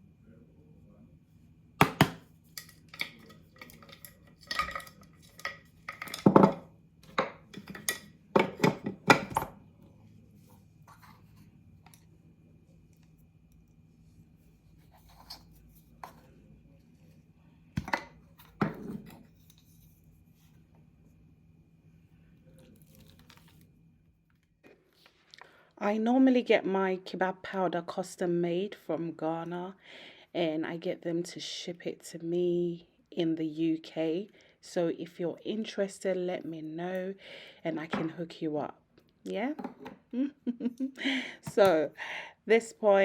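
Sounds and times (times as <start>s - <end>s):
containers and utensils knocking: 1.8s - 9.6s.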